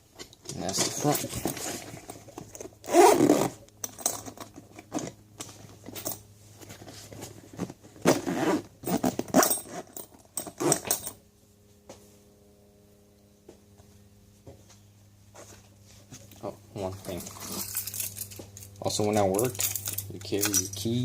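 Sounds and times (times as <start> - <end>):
faint steady hum: 0.0 - 21.0
tool bag handling noise: 0.1 - 11.2, 15.4 - 21.0
tools clinking: 17.0 - 21.0.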